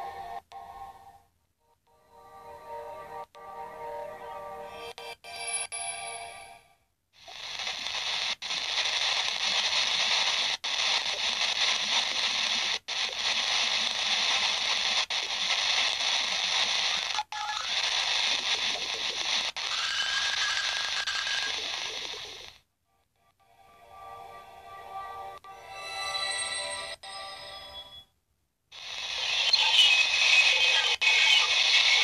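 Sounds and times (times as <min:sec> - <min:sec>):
static-like radio hiss: 0:07.2 - 0:22.7, 0:28.7 - 0:32.0.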